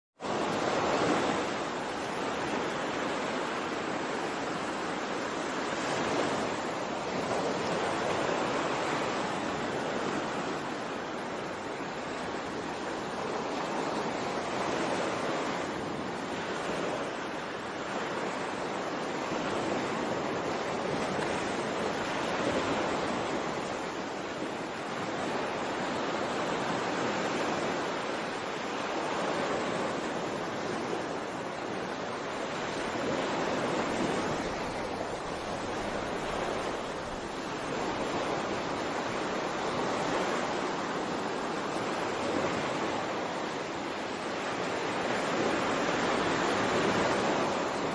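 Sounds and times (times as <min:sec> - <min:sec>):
sea waves washing in: 0:00.2 - 0:47.9.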